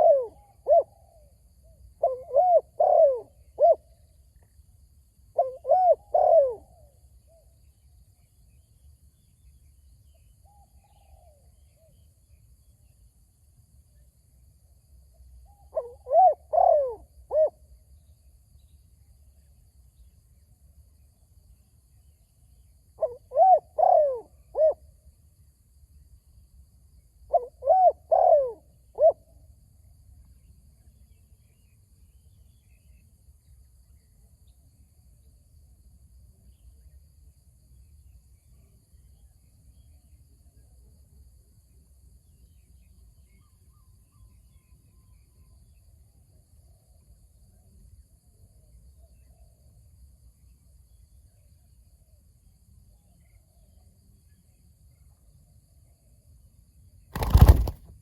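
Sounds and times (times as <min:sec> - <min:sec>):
doves cooing: 0:00.0 - 0:01.0, 0:02.0 - 0:03.8, 0:05.4 - 0:06.7, 0:15.8 - 0:17.5, 0:23.0 - 0:24.8, 0:27.3 - 0:29.2, 0:57.2 - 0:57.8.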